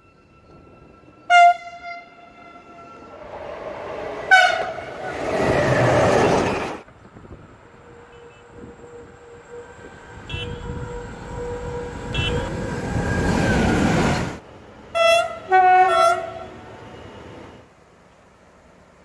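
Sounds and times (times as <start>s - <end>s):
train rumbling by: 0.0s - 19.0s
train horn: 0.5s - 3.1s, 4.3s - 5.2s, 7.8s - 12.8s, 14.9s - 16.7s.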